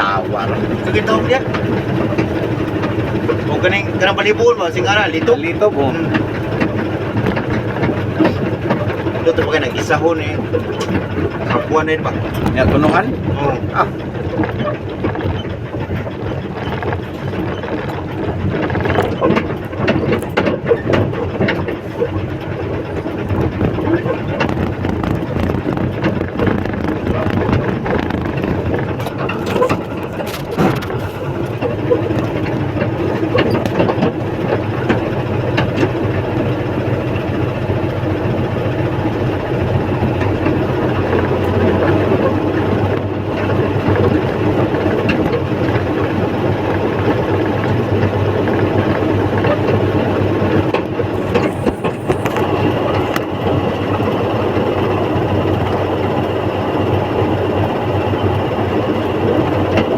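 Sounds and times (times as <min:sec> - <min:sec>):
heavy engine running: 0:00.0 - 0:59.9
brief rattle: 0:28.0 - 0:35.0.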